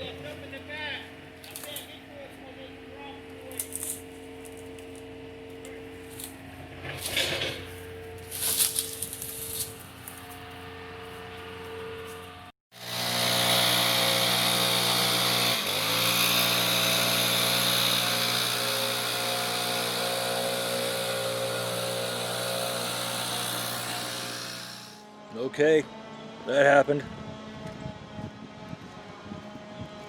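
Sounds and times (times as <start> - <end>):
small petrol engine running: 8.3 - 25.1.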